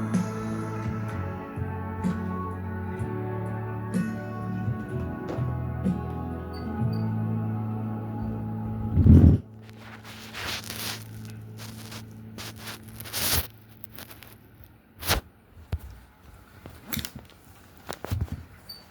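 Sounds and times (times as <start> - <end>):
low hum: 0.0 - 14.6
rustling and handling noises: 9.1 - 18.9.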